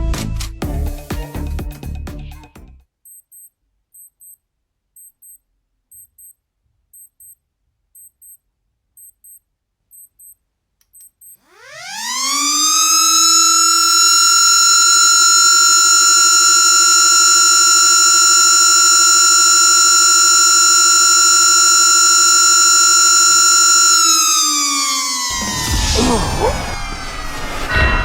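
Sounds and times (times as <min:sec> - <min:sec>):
mechanical siren tone: 0:11.3 - 0:28.0.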